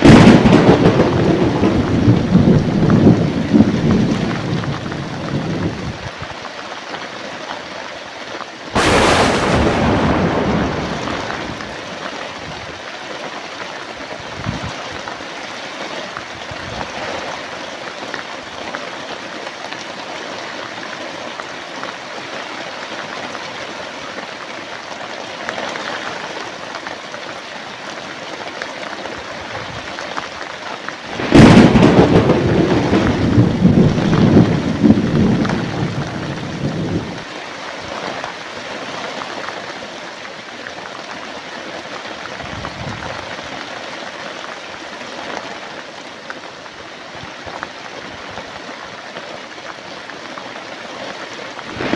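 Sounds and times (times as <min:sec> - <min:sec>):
rumbling thunder: 0:00.0 - 0:06.0, 0:08.8 - 0:12.2, 0:31.1 - 0:37.3, 0:51.7 - 0:51.9
sharp thunderclap: 0:00.0 - 0:06.0, 0:08.8 - 0:12.2, 0:31.1 - 0:37.3, 0:51.7 - 0:51.9
heavy rain: 0:00.0 - 0:06.2, 0:08.8 - 0:12.9, 0:28.9 - 0:51.9.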